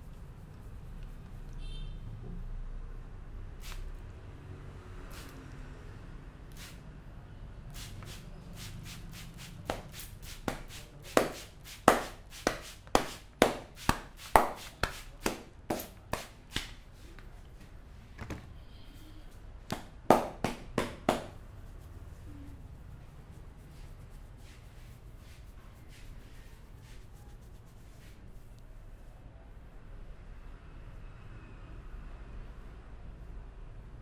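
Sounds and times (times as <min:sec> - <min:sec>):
hand slaps on head: 0:09.7 - 0:16.8, 0:19.7 - 0:21.4.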